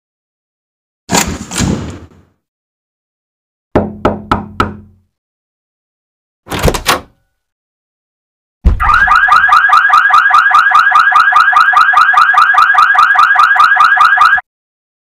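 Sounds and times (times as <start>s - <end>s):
electronic alarm beeping: 8.8s - 14.4s.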